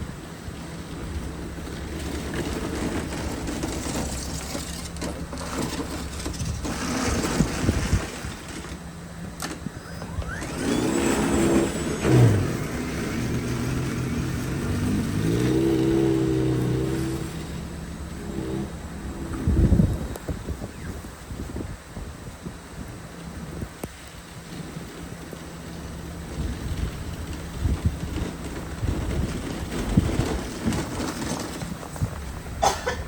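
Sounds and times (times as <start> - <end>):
wind and road noise: 0.0 - 33.0
engine revving: 9.8 - 20.2.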